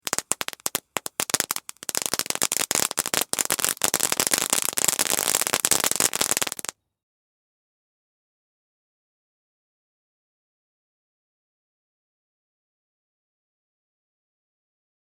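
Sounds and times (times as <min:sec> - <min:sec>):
firework fountain crackling: 0:00.0 - 0:06.8.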